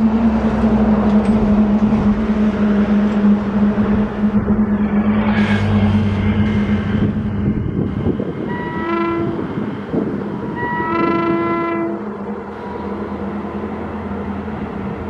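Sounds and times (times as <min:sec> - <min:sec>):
running train rumble and clatter: 0:00.0 - 0:15.0
locomotive horn blasts: 0:00.5 - 0:09.6, 0:10.5 - 0:13.0.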